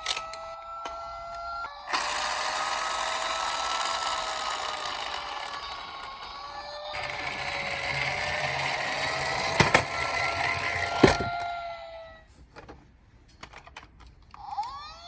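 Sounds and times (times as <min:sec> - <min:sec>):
toy car motor whirring: 0:01.9 - 0:11.5
rolling rattle: 0:07.0 - 0:11.4.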